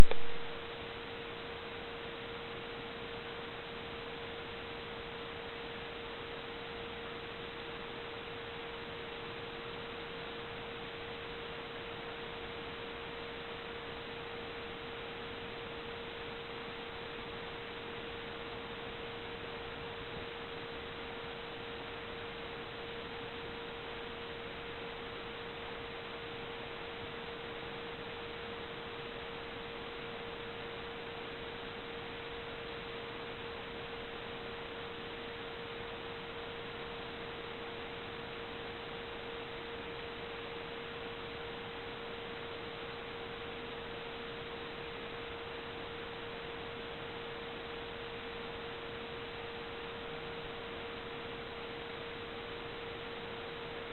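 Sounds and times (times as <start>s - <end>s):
loud blip: 0.0s - 0.5s
constant mid-pitched tone: 0.0s - 53.9s.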